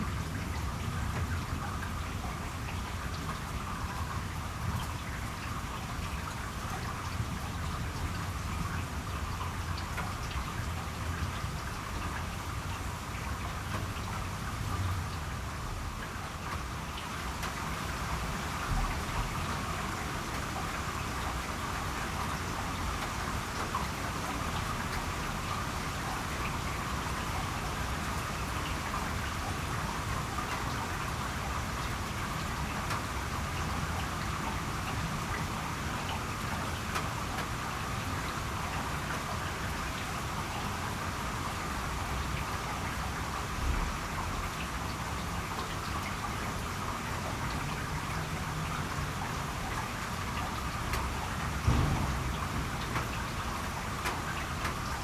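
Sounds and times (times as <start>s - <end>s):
steady rain falling: 0.0s - 55.0s
low bumps: 51.6s - 55.0s.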